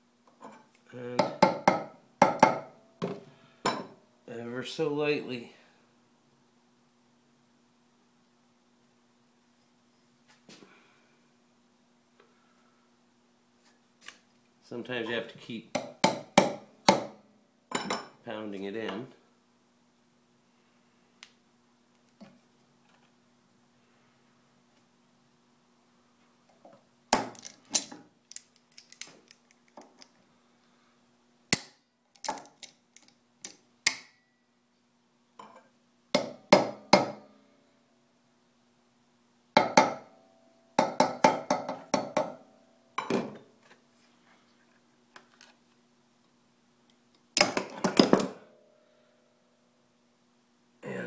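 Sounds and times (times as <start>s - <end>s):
faint steady hum: 0.0s - 51.0s
hammer tapping metal nail: 1.2s - 2.7s.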